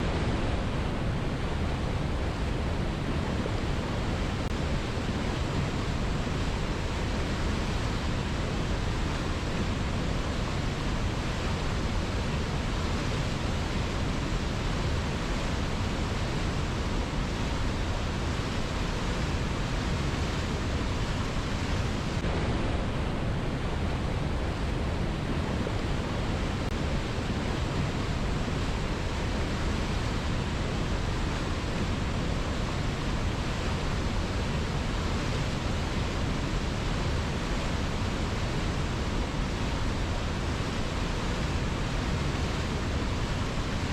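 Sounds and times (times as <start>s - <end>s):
river water rushing: 0.0s - 43.9s.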